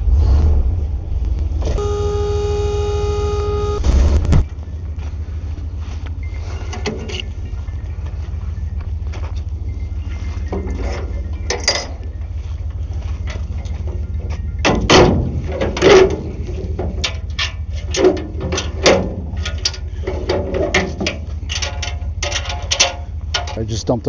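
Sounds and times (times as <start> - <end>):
truck engine idling: 0.9 - 24.0
metal clanks and bangs: 10.1 - 12.2, 13.2 - 23.8.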